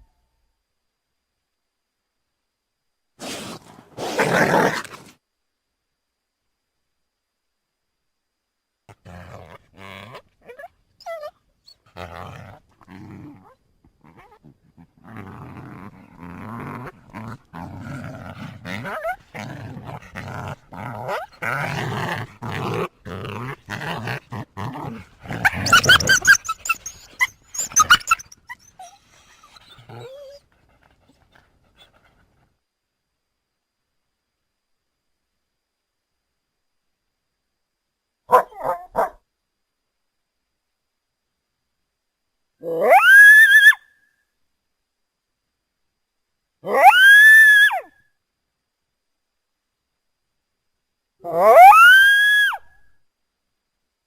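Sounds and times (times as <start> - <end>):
coyote growling and snarling: 3.2 - 5.2, 8.9 - 10.7, 11.8 - 32.4
coyote yelping: 25.3 - 30.4, 42.6 - 43.8, 46.6 - 47.9, 51.3 - 52.7.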